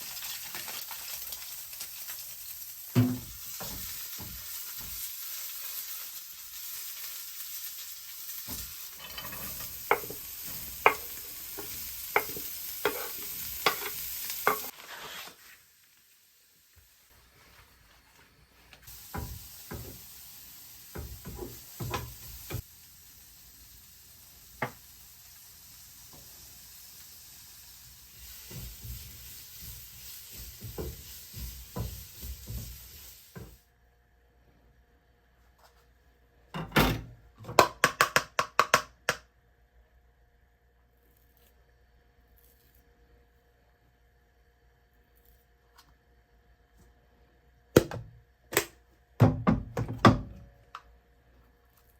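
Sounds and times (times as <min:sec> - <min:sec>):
sizzling hiss: 0:00.0 - 0:33.7.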